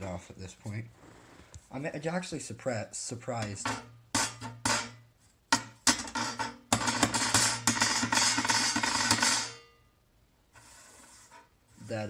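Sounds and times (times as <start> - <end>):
metal plate knocking and rattling: 3.4 - 9.7.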